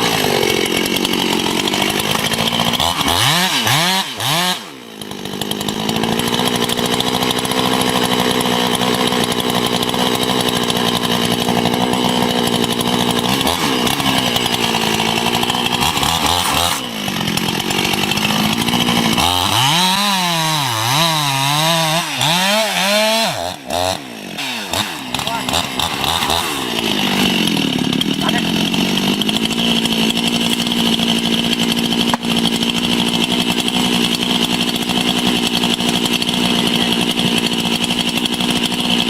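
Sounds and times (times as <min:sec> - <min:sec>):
chainsaw revving: 0:00.0 - 0:39.0.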